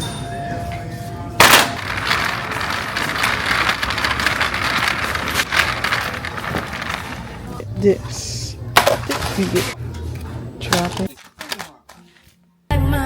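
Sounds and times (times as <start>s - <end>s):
rustling clattering handling noise: 1.4s - 8.2s, 8.8s - 12.3s.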